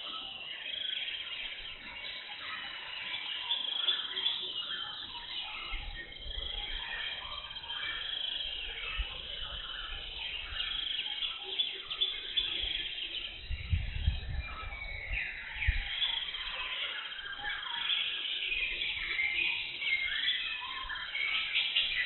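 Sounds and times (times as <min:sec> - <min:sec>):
birds chirping and calling: 0:00.0 - 0:22.0.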